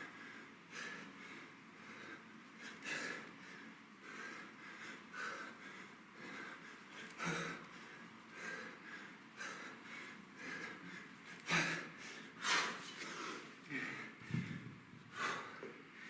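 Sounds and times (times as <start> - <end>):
man breathing heavily: 0.0 - 16.0.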